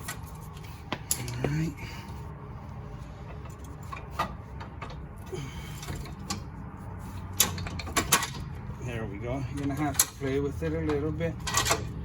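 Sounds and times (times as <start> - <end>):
metal clicks and knocks: 7.3 - 8.6, 10.8 - 12.0.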